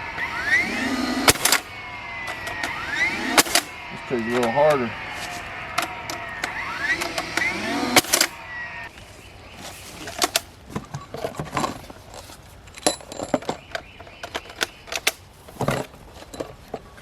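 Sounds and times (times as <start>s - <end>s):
metallic clinks and knocks: 10.2s - 17.0s.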